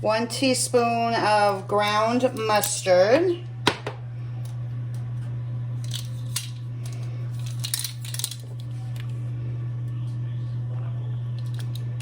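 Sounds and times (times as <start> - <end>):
low hum: 0.0 - 12.0.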